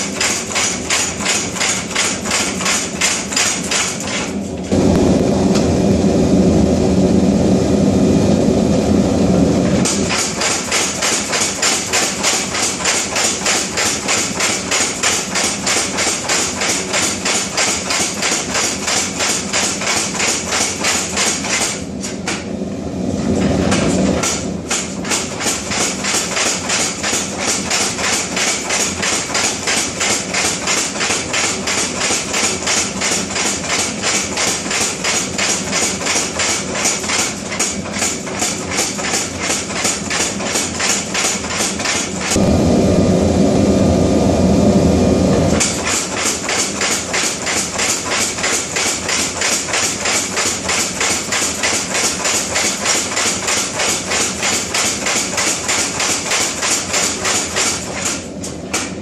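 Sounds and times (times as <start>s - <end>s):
power hammer striking steel: 0.0s - 5.7s, 9.7s - 22.5s, 23.4s - 42.4s, 45.5s - 59.0s
steady rushing noise: 0.9s - 17.4s, 22.3s - 49.8s.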